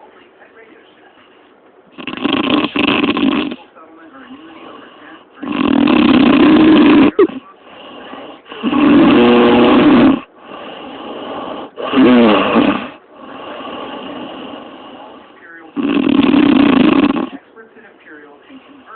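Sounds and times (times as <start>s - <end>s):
woman snoring heavily: 2.0s - 3.6s, 5.4s - 17.4s.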